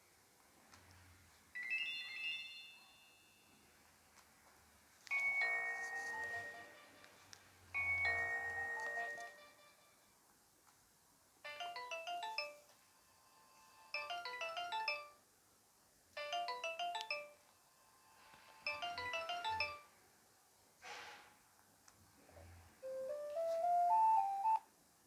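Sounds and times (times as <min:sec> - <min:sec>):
phone ringtone high beeps: 0:05.2 - 0:06.9, 0:07.8 - 0:09.7, 0:11.5 - 0:12.7, 0:13.3 - 0:15.2, 0:16.2 - 0:17.4, 0:18.0 - 0:19.9, 0:22.8 - 0:24.6.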